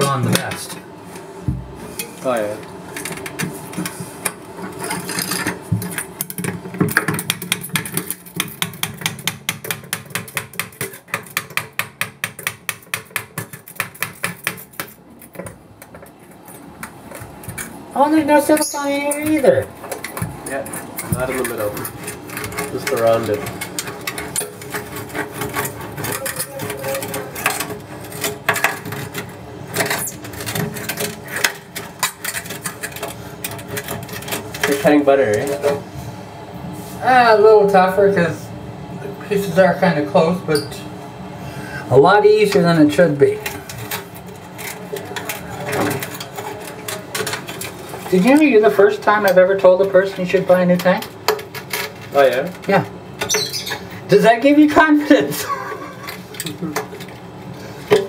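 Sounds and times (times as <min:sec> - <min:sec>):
razor blade scraping glass: 0:17.6 - 0:34.9, 0:53.2 - 0:53.9.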